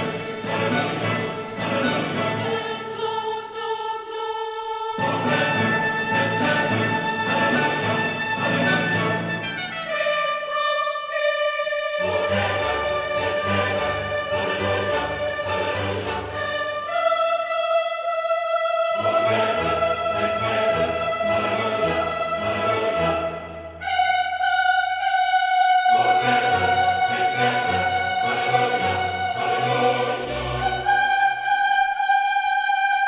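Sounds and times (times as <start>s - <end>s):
orchestral music: 0.0s - 3.2s, 5.0s - 17.0s, 19.0s - 24.5s, 25.9s - 31.6s.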